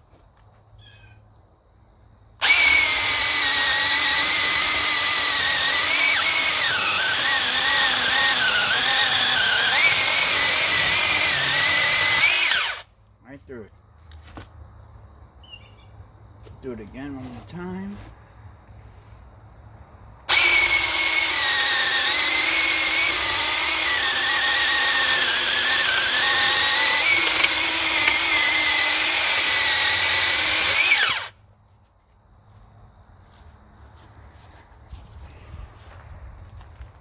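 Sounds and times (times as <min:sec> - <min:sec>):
electric chainsaw cutting log: 0:02.4 - 0:12.9, 0:20.3 - 0:31.4.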